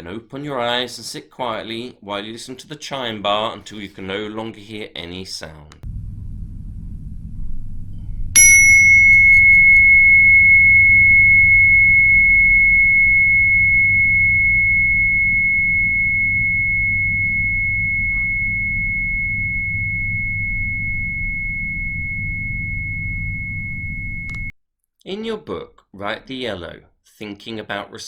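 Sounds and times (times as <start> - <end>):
chime bar ringing: 8.4 - 13.1.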